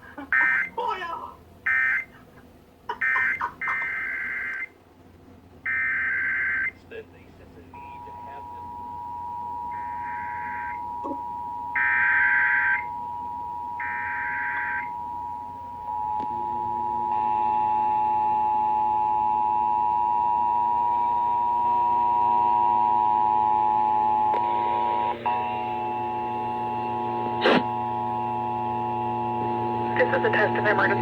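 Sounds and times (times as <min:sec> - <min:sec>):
overlapping steady tones: 0:02.9 - 0:04.7, 0:05.6 - 0:31.0
two-tone alarm signal: 0:05.7 - 0:06.7, 0:07.8 - 0:31.0
data bursts squealing: 0:09.7 - 0:12.9.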